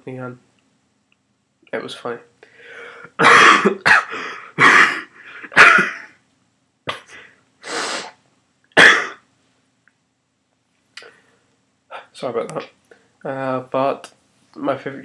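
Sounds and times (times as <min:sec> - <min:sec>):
person coughing harshly: 0:03.1 - 0:06.2, 0:08.8 - 0:09.2.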